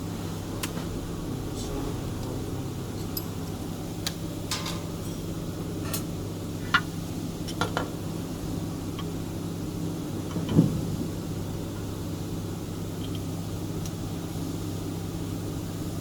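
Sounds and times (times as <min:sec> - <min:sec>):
steady low hum: 0:00.0 - 0:14.2.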